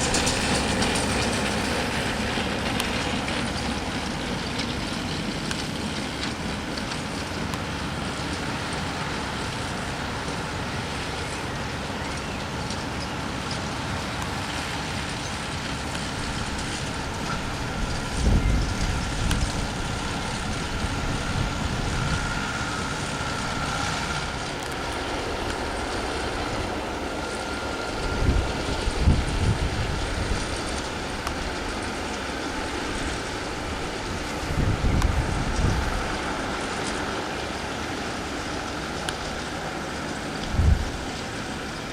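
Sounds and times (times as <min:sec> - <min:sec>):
motor vehicle road noise: 0:00.0 - 0:41.9.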